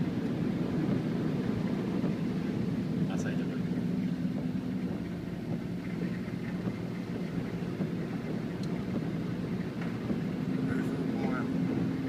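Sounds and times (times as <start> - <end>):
car engine hum: 0.0 - 12.0.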